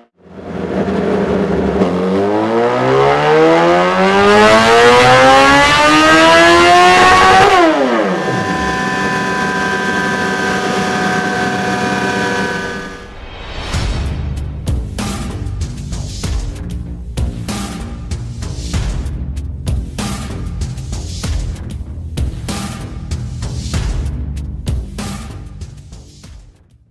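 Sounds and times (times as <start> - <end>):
motorcycle engine revving: 0.1 - 13.1.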